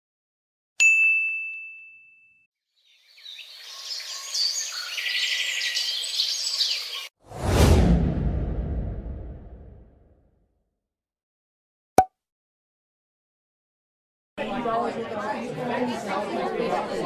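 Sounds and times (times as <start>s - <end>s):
birds chirping: 2.8s - 7.1s
loud whoosh: 7.3s - 10.1s.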